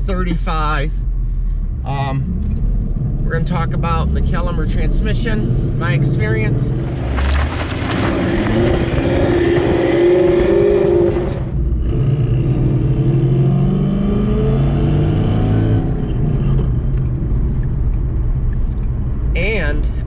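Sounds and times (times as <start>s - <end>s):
car engine and exhaust: 0.0s - 20.0s.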